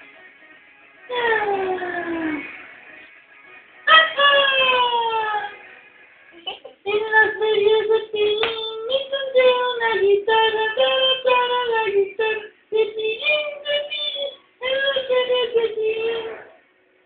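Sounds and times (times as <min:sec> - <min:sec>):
high voice singing: 0:06.4 - 0:16.6.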